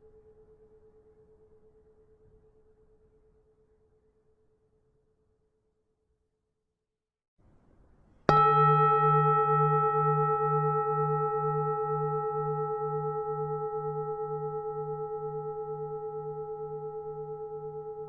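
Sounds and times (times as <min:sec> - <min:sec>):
bronze temple bell ringing: 0:08.3 - 0:18.0.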